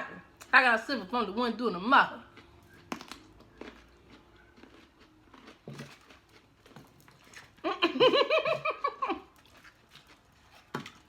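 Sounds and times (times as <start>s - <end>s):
person laughing: 7.6s - 9.3s.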